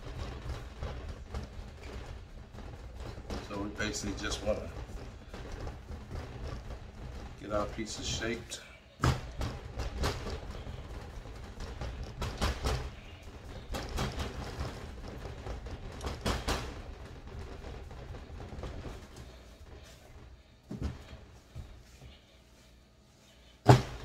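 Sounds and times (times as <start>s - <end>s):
dough thumping on board: 23.6s - 24.0s.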